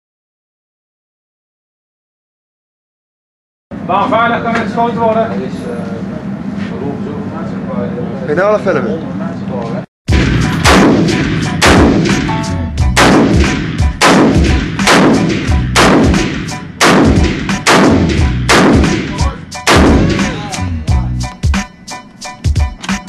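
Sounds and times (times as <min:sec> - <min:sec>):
rifle shots with echo: 0:10.1 - 0:20.4.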